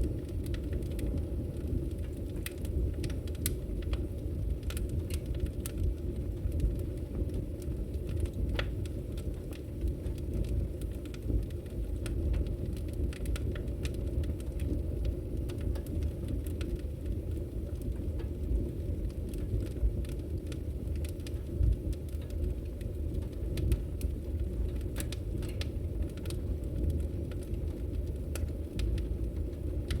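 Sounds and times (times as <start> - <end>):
fire crackling: 0.0 - 30.0.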